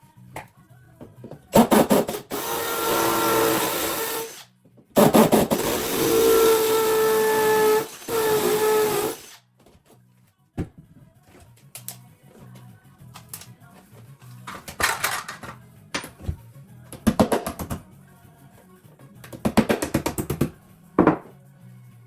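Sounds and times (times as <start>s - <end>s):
electric drill boring into wall: 1.6s - 9.4s.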